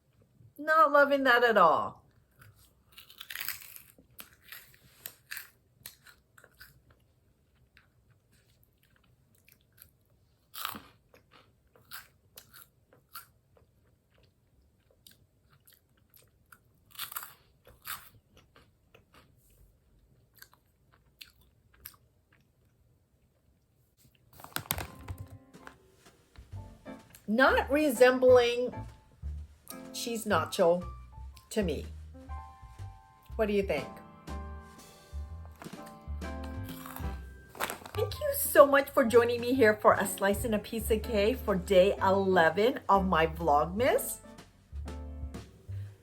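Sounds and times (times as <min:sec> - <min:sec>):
chewing crunchy snacks: 0:02.1 - 0:25.2, 0:35.6 - 0:38.2.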